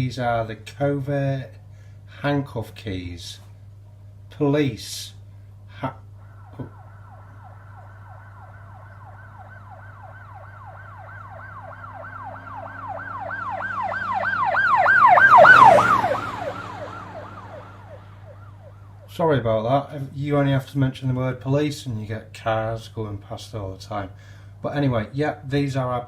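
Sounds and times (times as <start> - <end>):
police siren yelping: 6.2 - 19.1.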